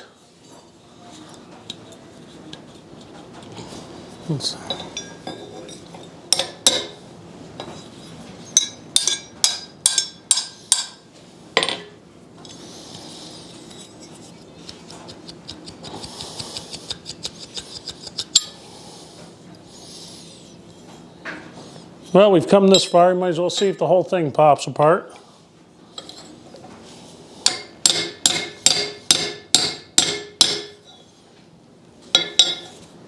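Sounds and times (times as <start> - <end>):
hammer striking metal chisel: 8.6 - 11.0, 27.5 - 30.8.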